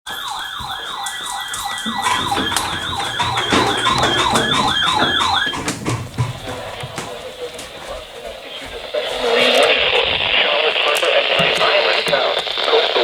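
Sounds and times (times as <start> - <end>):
electronic siren yelping: 0.1 - 5.8.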